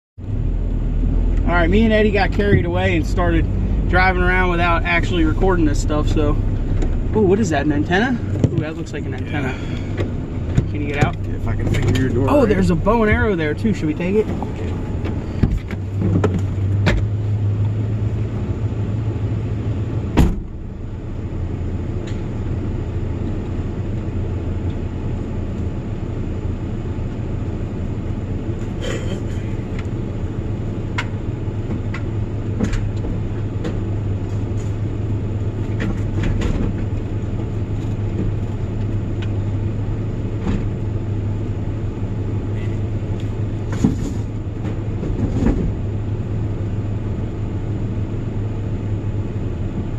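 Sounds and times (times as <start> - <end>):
truck engine running: 0.2 - 49.9
door shutting bang: 20.2 - 20.5.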